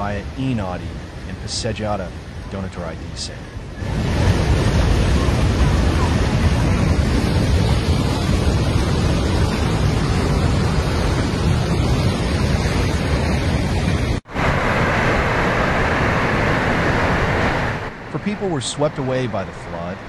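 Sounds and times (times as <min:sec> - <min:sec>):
rushing river water: 0:00.0 - 0:20.0.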